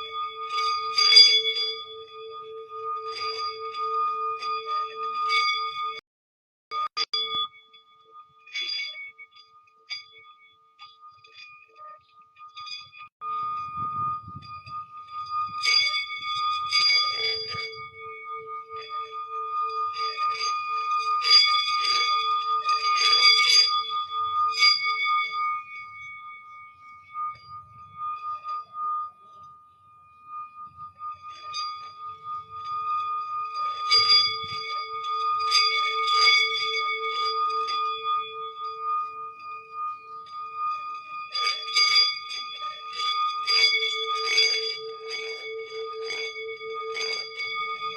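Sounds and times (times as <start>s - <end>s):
ringing bells and chimes: 0.0s - 6.0s, 6.7s - 47.9s.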